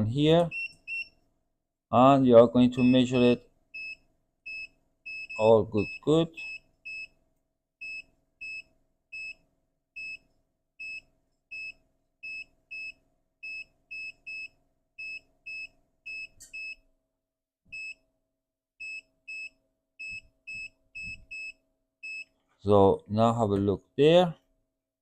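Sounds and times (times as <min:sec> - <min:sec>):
multimeter short high beeps: 0:02.8 - 0:07.1.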